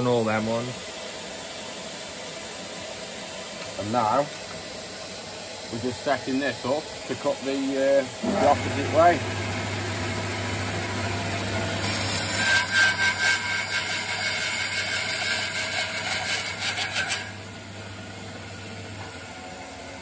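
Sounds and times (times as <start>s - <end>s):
bandsaw motor hum: 3.5s - 20.0s
bandsaw cutting timber: 5.7s - 17.6s.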